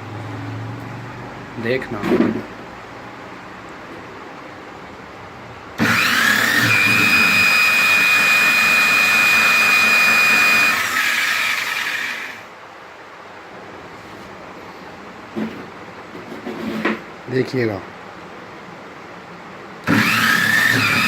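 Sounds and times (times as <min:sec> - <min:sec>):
power tool motor whine: 0:05.8 - 0:12.5, 0:19.8 - 0:21.0.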